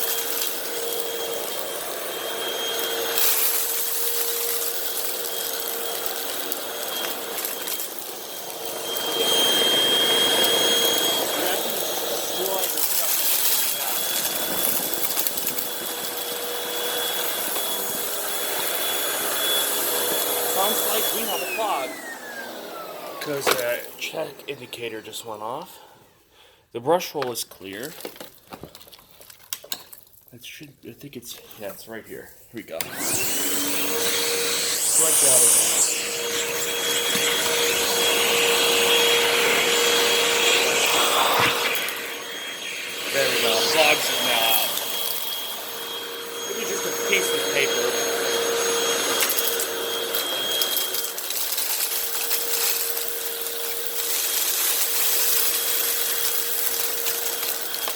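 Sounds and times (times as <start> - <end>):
vacuum cleaner whining: 0.0 - 26.0, 32.6 - 57.9
vacuum crackling picking up debris: 33.0 - 57.9.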